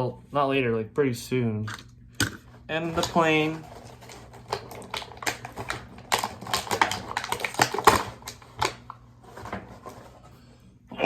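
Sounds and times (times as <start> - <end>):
plastic packaging crinkling: 2.5 - 10.2.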